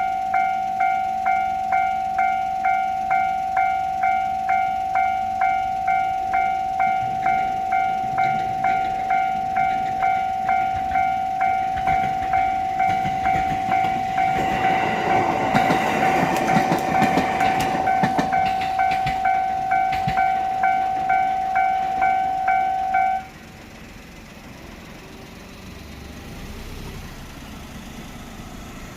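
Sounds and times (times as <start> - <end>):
level-crossing warning bell: 0.0 - 25.0
wheels clicking over rail joints: 5.4 - 23.4
train wheels rushing: 5.9 - 23.4.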